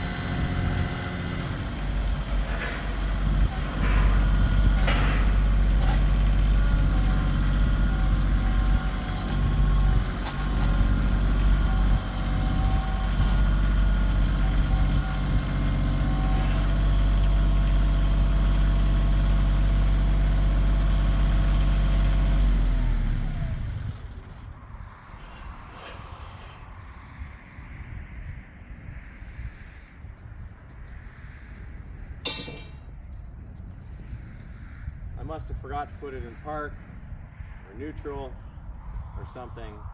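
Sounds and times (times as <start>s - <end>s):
tractor diesel engine running: 0.0s - 26.6s.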